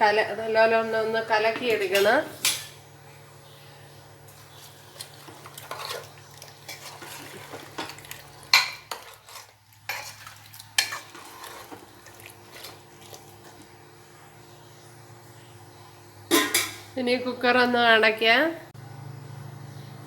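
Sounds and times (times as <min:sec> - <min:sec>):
spoon scraping metal pot: 0:04.5 - 0:13.6.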